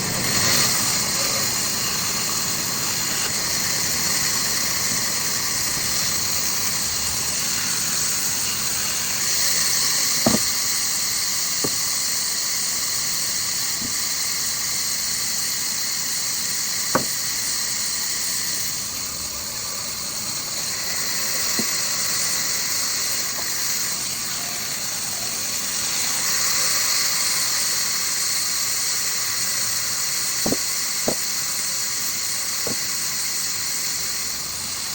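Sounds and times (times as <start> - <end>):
wood-cutting machine whining: 0.0 - 34.9
sharp knocks: 10.2 - 10.5, 16.9 - 17.1.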